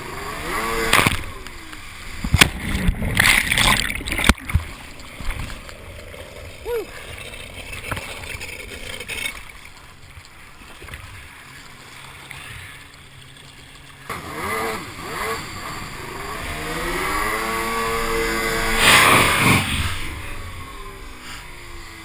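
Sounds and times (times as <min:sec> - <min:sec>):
jet ski engine revving: 0:00.0 - 0:02.6, 0:14.0 - 0:22.0.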